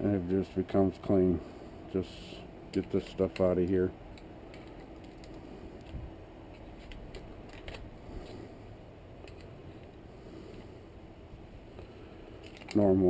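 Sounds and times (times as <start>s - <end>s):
clicks and scrapes of parts handled: 2.7s - 8.5s, 9.2s - 10.7s, 11.7s - 13.0s.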